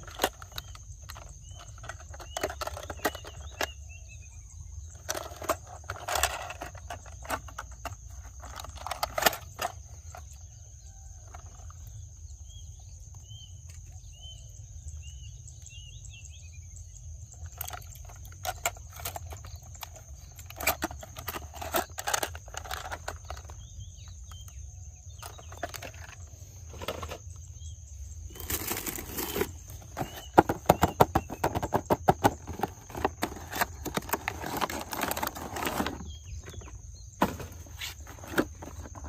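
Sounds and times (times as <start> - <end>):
small objects clicking and rustling: 0.0 - 3.8, 4.8 - 10.5, 17.4 - 27.4, 28.3 - 39.0.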